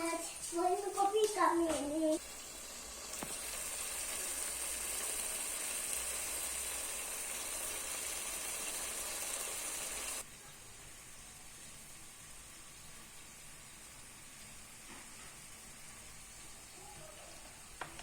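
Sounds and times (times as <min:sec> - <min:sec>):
steady hiss: 0:00.0 - 0:18.0.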